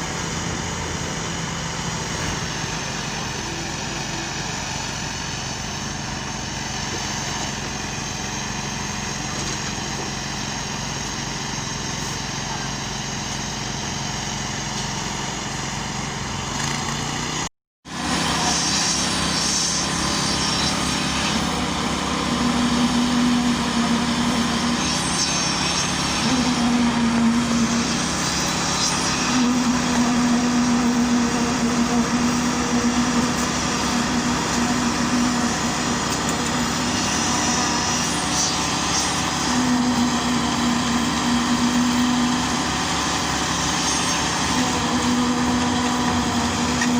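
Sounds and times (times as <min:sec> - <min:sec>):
construction machinery engines: 0:00.0 - 0:46.9
steady engine note: 0:17.9 - 0:46.9.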